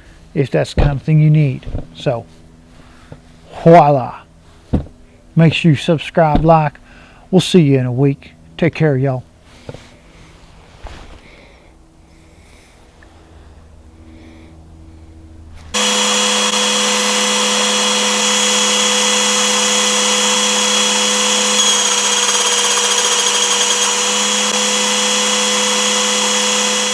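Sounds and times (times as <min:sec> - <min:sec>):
motor-like whine: 0:13.9 - 0:26.9.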